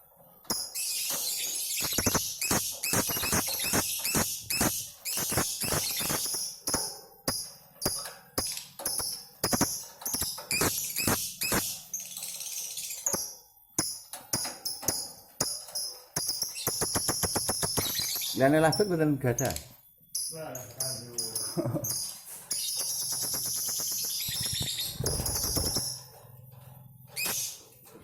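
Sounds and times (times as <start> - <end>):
lovebirds shrill trills: 0.5 - 26.1, 27.1 - 27.6
sharp irregular clicks: 1.8 - 11.8, 13.1 - 18.4, 22.8 - 26.0.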